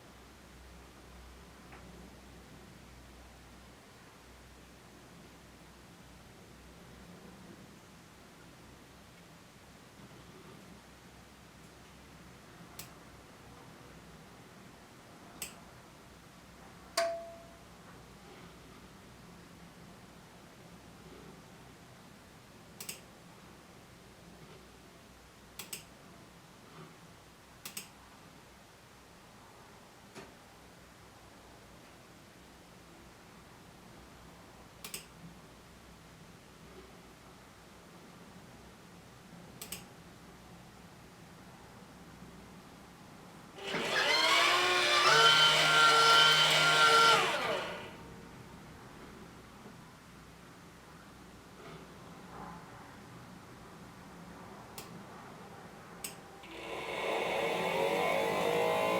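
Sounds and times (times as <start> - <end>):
faint room hiss: 0.0 - 56.5
computer mouse clicks: 22.8 - 23.0, 25.6 - 25.9, 27.6 - 27.9, 34.8 - 35.1, 39.6 - 39.9
coffee roaster motor whining: 43.6 - 48.0, 56.4 - 58.9.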